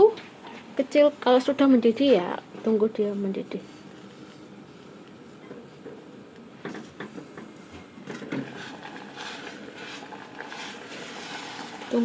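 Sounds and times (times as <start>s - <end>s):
pot hissing on stove: 8.2s - 12.0s.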